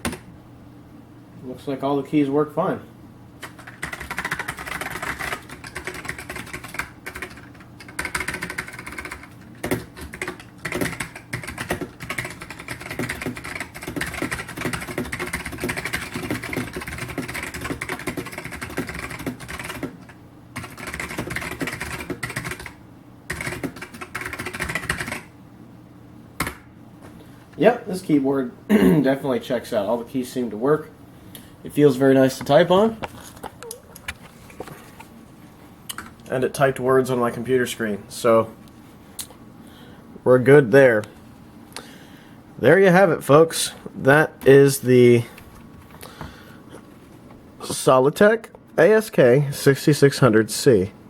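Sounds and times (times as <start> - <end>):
mechanical keyboard typing: 3.4 - 25.3.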